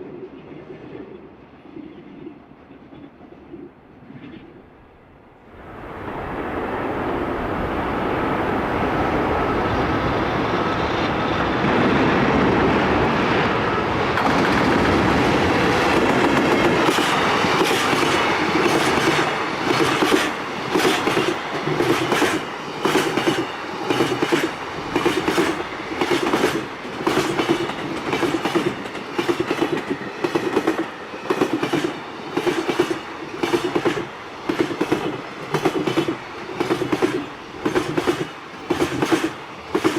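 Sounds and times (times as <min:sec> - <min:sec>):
train wheels clickety-clack: 0:14.1 - 0:39.9.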